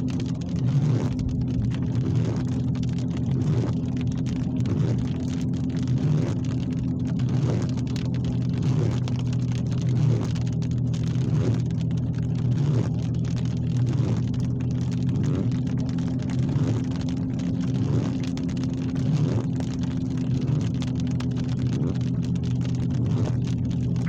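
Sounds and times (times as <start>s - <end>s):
constant low hum: 0.0s - 24.0s
heavy rain pattering: 0.0s - 24.0s.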